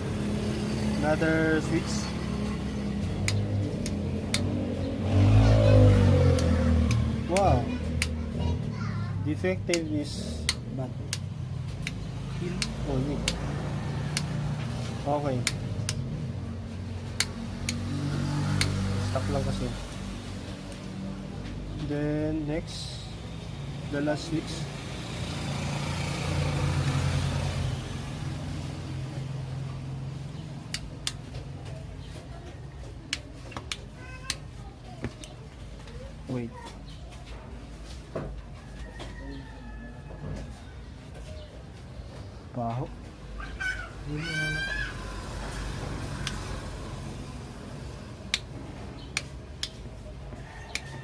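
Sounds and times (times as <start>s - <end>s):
switch clicks: 3.2s - 4.6s, 9.7s - 13.5s, 17.2s - 17.9s, 30.7s - 31.2s
sharp clicks: 3.2s - 4.7s, 6.3s - 8.2s, 15.4s - 16.1s, 17.1s - 18.9s.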